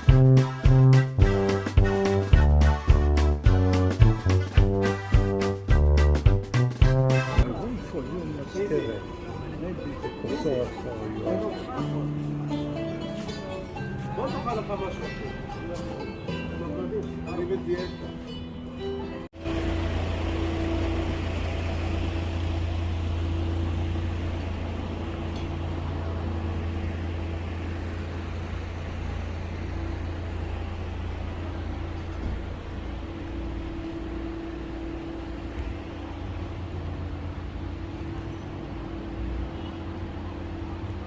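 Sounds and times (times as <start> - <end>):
vehicle engine running: 19.4 - 39.1.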